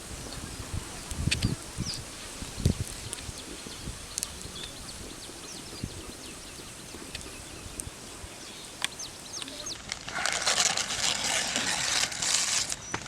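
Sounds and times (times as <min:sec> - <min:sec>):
small birds chirping: 0:00.0 - 0:10.0.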